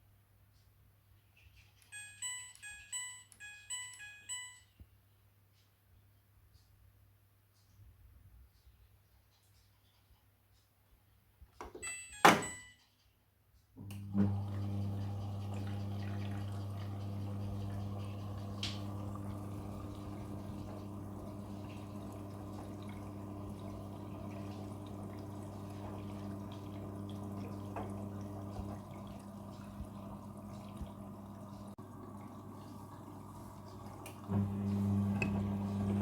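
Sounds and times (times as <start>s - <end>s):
washing machine electric hum: 13.8s - 36.0s
water splashing in drum: 14.2s - 36.0s.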